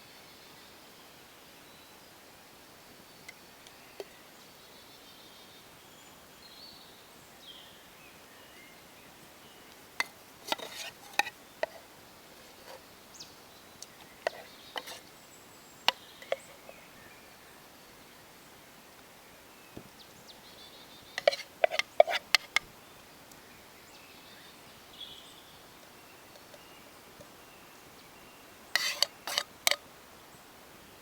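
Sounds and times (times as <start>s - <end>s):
faint bird chirps: 22.7s - 29.3s.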